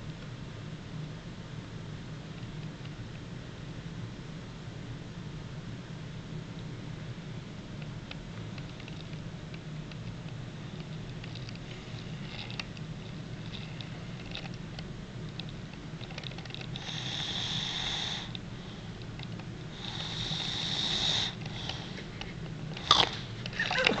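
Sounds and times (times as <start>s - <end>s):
steady low hum: 0.0s - 24.0s
man snoring: 16.8s - 18.3s, 19.8s - 21.9s.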